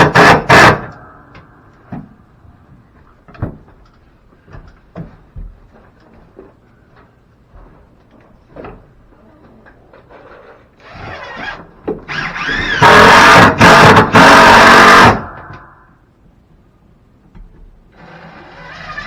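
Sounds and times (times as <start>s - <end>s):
wooden knocks and clunks: 1.9s - 6.6s.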